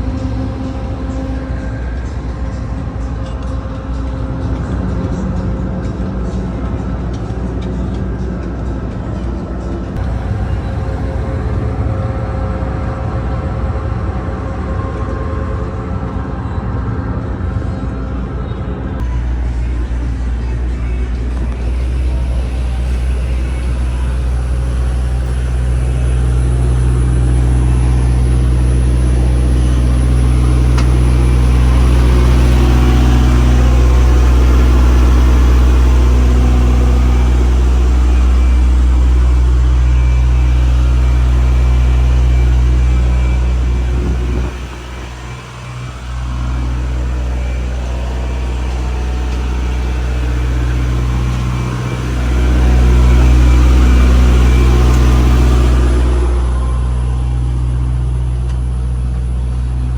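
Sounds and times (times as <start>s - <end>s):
boat engines droning: 0.0s - 6.6s, 9.2s - 59.9s.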